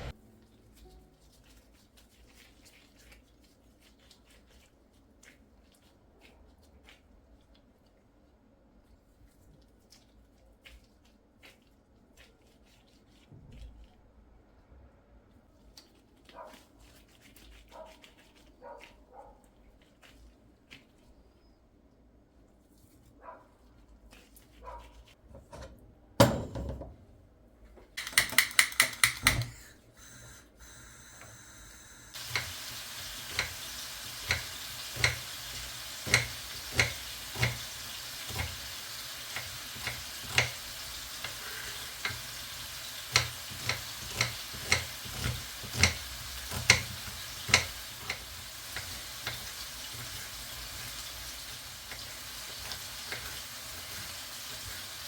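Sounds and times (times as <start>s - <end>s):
kitchen knocks: 25.4s - 27.0s
quick clicks: 28.0s - 29.6s
food sizzling in a frying pan: 30.0s - 55.0s
utensil tapping and scraping pan: 32.2s - 54.8s.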